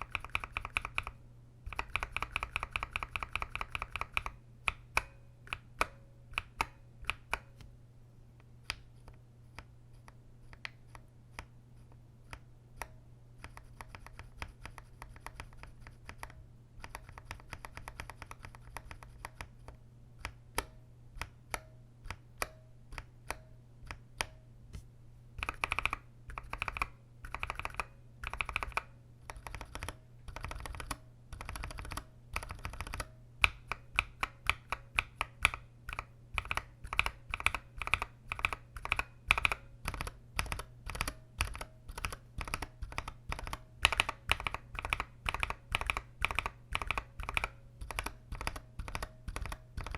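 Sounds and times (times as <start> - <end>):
mechanical keyboard keys clacking: 0.0 - 1.1, 1.7 - 7.5, 13.4 - 19.6, 25.4 - 49.9
steady low hum: 0.0 - 49.9.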